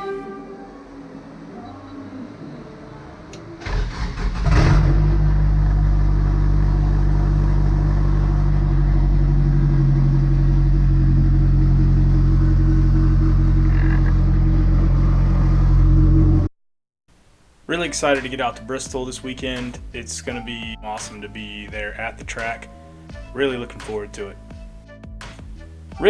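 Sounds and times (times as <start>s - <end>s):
car engine idling: 3.6s - 16.5s.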